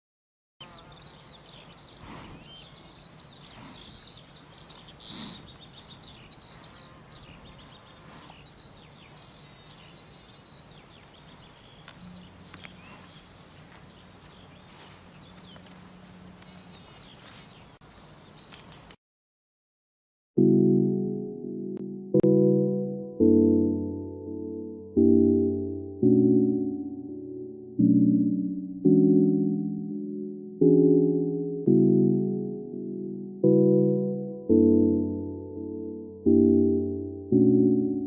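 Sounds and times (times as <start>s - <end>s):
faint outdoor hiss: 0.6s - 19.0s
small birds chirping: 0.6s - 19.0s
low steady hum: 6.0s - 18.9s.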